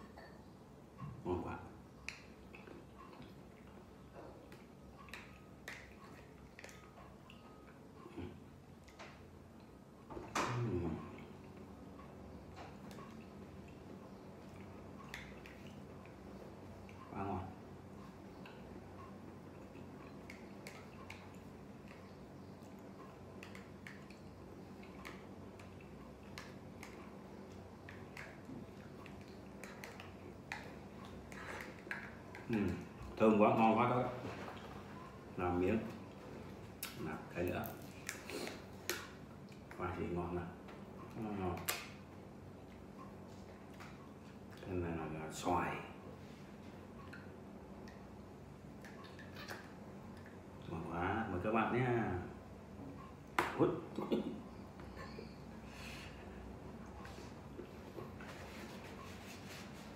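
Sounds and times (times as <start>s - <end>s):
low steady hum: 0.0s - 59.9s
soft chewing: 2.0s - 9.8s, 10.8s - 33.2s, 35.8s - 39.9s, 42.5s - 44.7s, 54.0s - 59.9s
mouth clicks and chewing: 18.3s - 32.9s.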